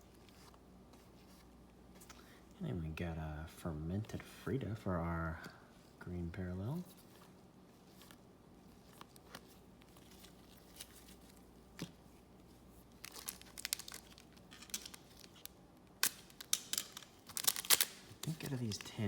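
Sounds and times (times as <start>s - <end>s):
wrapper crinkling and tearing: 8.8s - 11.5s, 12.8s - 19.0s.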